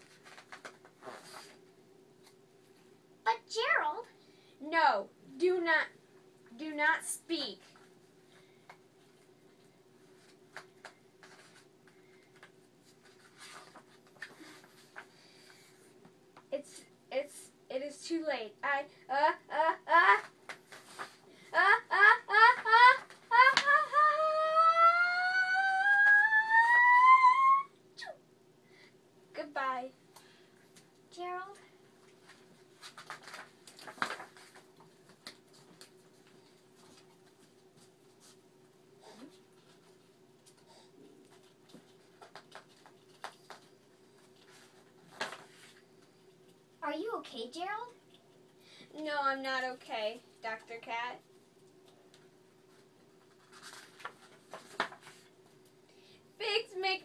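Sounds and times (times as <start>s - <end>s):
paper pages rustling: 0.0s - 1.6s, 10.1s - 15.7s, 20.5s - 21.2s, 32.0s - 38.4s, 41.2s - 46.1s, 52.2s - 55.4s
faint steady hum: 0.0s - 57.0s.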